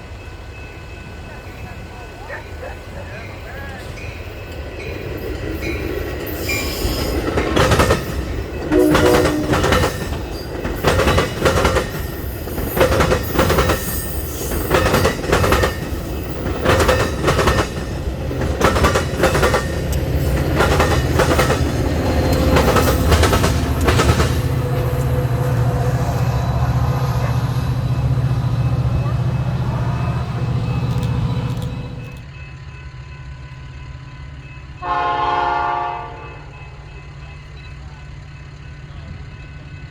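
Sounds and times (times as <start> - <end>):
train wheels clicking over rail joints: 3.0 - 32.4.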